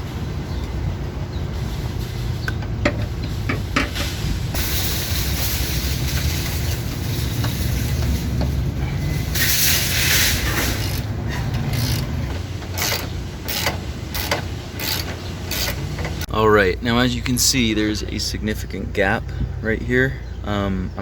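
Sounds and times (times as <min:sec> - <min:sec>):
ratchet wrench clicking: 0:10.4 - 0:15.9.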